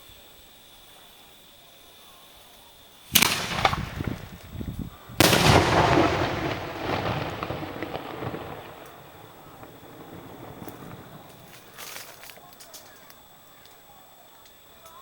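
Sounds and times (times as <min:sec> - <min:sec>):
fireworks bursting with crackling: 0:03.1 - 0:13.2.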